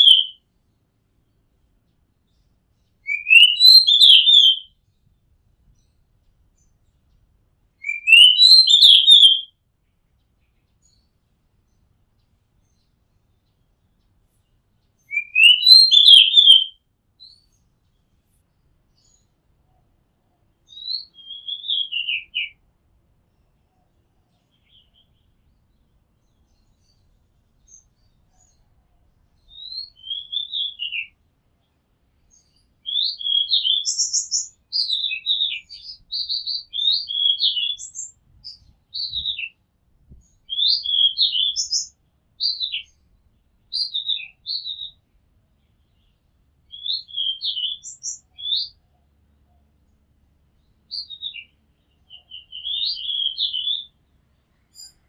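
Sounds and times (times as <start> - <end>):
magpie-robin singing: 0.0 - 0.4, 1.9 - 4.7, 7.8 - 9.5, 14.8 - 18.1, 20.6 - 22.6, 23.8 - 43.0, 43.6 - 49.7, 50.6 - 54.0, 54.7 - 55.0.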